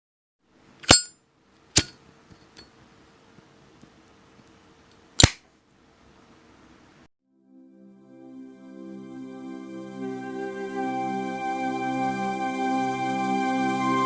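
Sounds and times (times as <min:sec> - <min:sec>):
lighter lid clinking: 0:00.8 - 0:01.1, 0:01.8 - 0:02.7.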